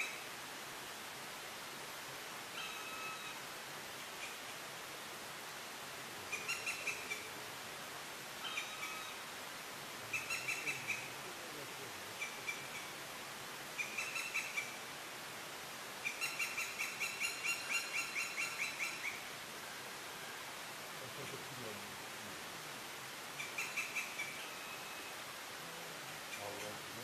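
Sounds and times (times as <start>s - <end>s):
woodpecker rattling call: 13.8s - 14.7s, 23.4s - 24.9s.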